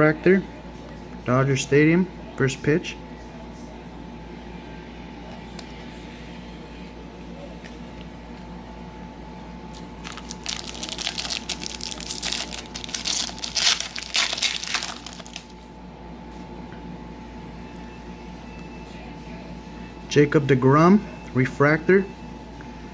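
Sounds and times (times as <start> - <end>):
foil wrapper crinkling: 9.7 - 15.7.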